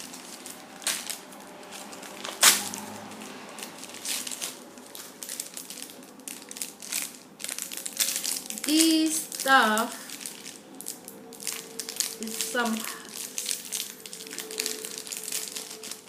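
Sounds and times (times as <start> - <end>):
packaging crinkling: 0.0 - 16.0.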